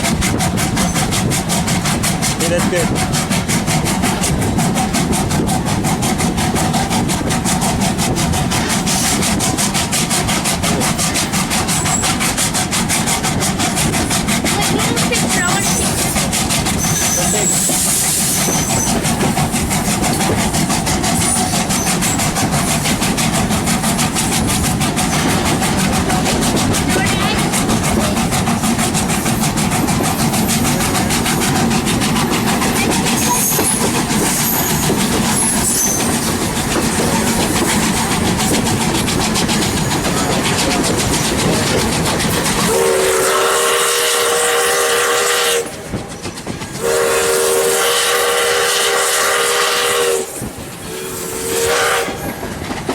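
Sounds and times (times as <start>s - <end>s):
train wheels rumbling on track: 0.0s - 52.9s
steam locomotive whistle blasts: 42.7s - 45.8s, 46.8s - 52.4s.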